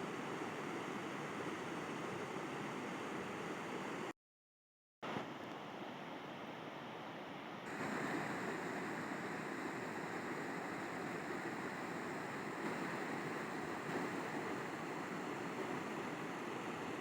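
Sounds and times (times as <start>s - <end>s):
river water flowing: 7.7s - 17.0s.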